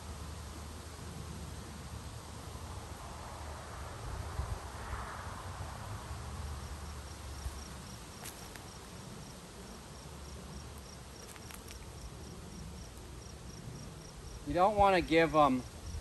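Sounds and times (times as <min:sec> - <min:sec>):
cricket chirping: 0:05.9 - 0:14.6, 0:15.5 - 0:16.0
faint clicks: 0:11.2 - 0:12.1.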